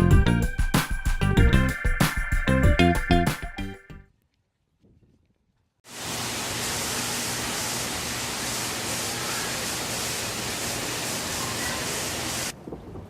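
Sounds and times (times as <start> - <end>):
heavy rain falling: 5.9 - 12.6.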